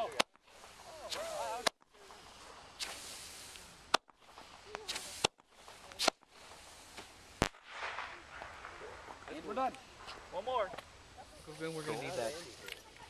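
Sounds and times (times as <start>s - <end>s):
voices calling out: 0.0s - 6.9s
fireworks bangs: 0.0s - 12.9s
fireworks hissing and crackling: 0.0s - 13.0s.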